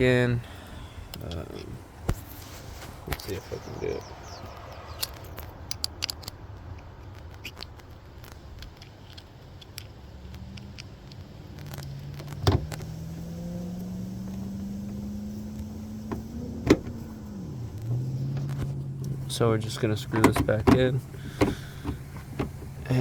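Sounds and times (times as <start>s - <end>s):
sharp clicks: 4.4s - 12.9s
vehicle engine running: 9.5s - 23.0s.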